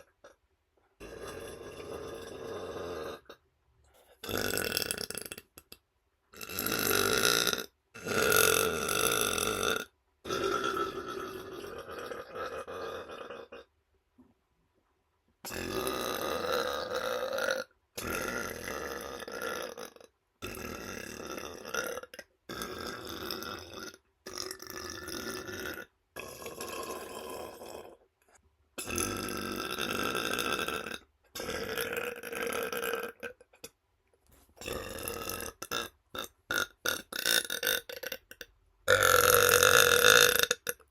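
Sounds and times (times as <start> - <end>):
man burping: 4.2 - 5.8, 6.4 - 13.7, 15.4 - 28.0, 28.8 - 33.7, 34.6 - 40.9.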